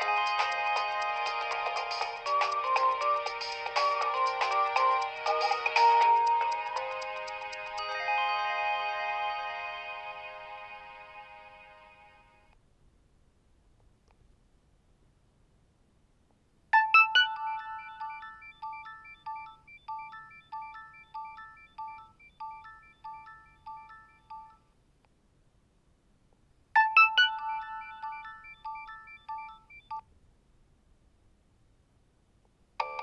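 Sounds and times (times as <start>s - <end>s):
phone alert chimes: 16.8s - 24.6s, 26.8s - 30.0s
short electronic beeps: 26.8s - 30.0s.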